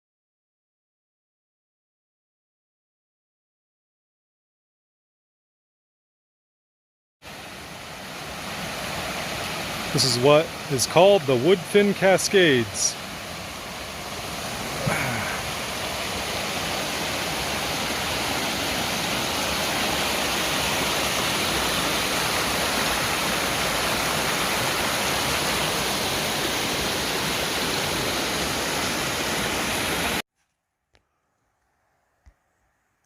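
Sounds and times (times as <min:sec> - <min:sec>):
waterfall rushing: 0:07.3 - 0:30.2.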